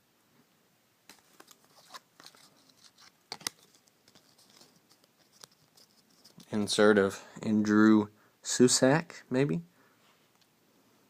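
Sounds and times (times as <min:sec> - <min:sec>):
cards clicking and rustling: 0:01.1 - 0:06.6.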